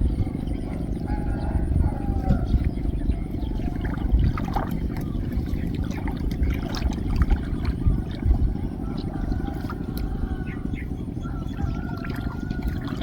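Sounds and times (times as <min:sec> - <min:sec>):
steady low rumble: 0:00.0 - 0:13.0
water splashing and trickling: 0:03.4 - 0:10.5, 0:11.3 - 0:13.0.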